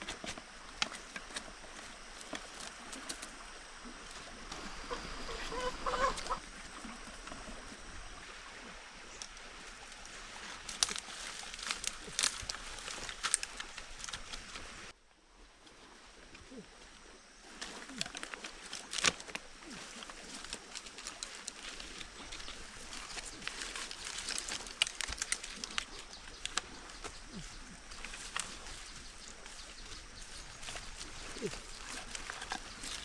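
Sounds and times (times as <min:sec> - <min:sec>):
outdoor rustling: 0:00.0 - 0:15.0, 0:15.6 - 0:33.0
short low bird calls: 0:04.6 - 0:06.4.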